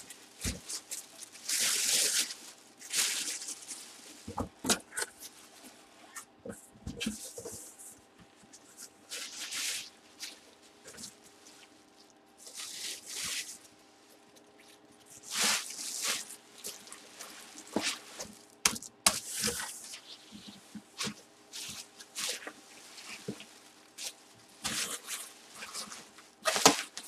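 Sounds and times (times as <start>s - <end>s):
faint steady hum: 0.0s - 27.0s
rustling and crinkling: 0.0s - 27.0s.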